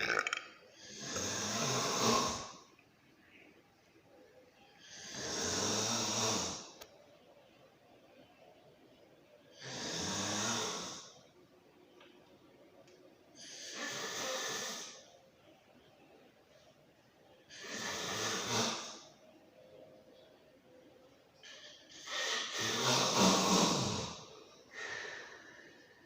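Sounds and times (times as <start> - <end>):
person snoring: 0.8 - 2.6, 4.8 - 6.8, 9.6 - 11.1, 17.5 - 19.1, 22.0 - 24.3.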